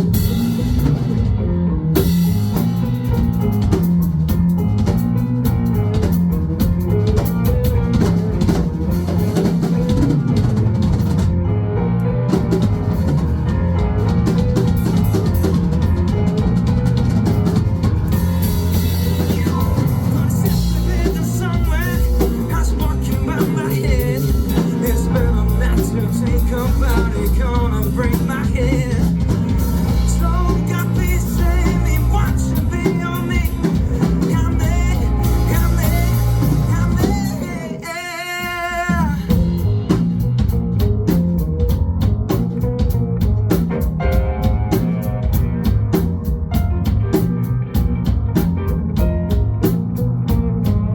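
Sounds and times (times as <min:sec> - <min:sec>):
live funk band playing: 0:00.0 - 0:50.9
person singing: 0:18.2 - 0:39.7.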